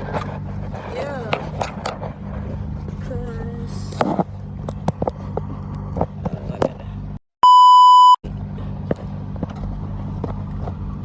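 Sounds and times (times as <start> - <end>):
car interior hum: 0.0 - 11.0
high-pitched bleep tone: 7.4 - 8.2.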